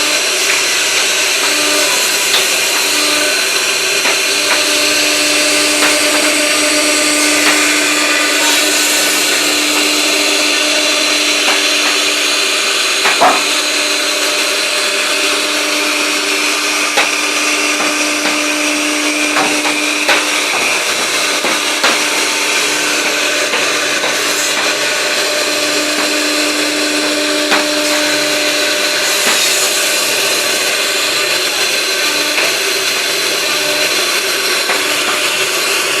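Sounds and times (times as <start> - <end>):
router motor whine: 0.0 - 36.0
low hum: 4.0 - 29.9.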